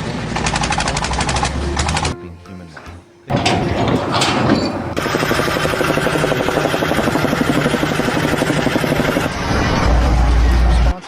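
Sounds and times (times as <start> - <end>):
machine pulsing steadily: 3.3 - 10.2.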